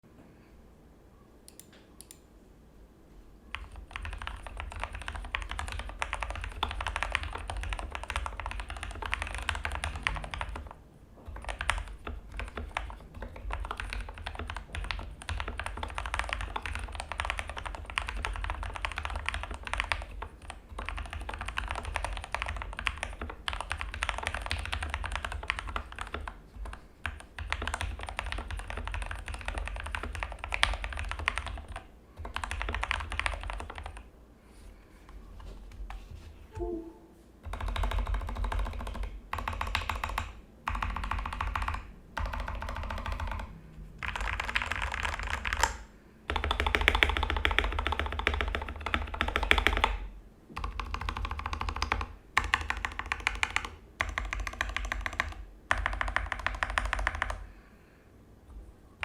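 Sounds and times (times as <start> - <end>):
mechanical keyboard typing: 3.5 - 34.1, 37.4 - 50.0, 50.6 - 57.4.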